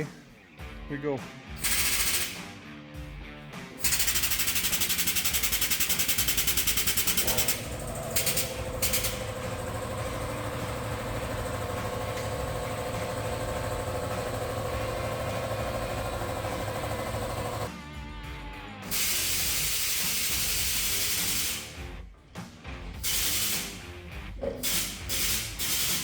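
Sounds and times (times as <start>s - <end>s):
machine rattling rapidly: 1.6s - 2.4s, 3.8s - 17.7s
short machine bursts: 1.6s - 2.4s, 3.8s - 17.7s, 24.7s - 26.0s
motor hum: 5.4s - 17.7s.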